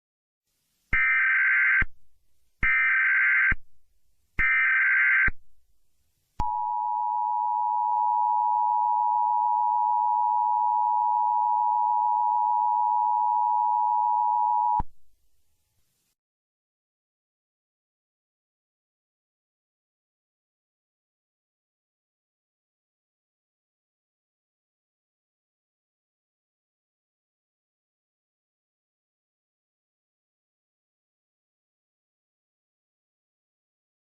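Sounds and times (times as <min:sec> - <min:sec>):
data tone bursts: 0:06.4 - 0:14.9.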